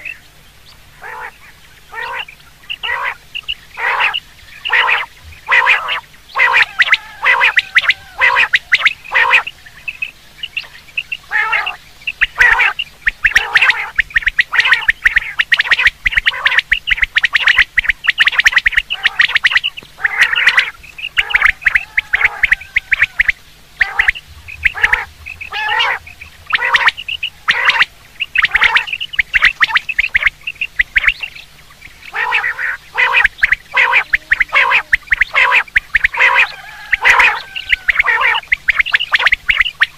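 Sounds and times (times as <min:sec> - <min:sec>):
quail calling: 0:00.0 - 0:39.9.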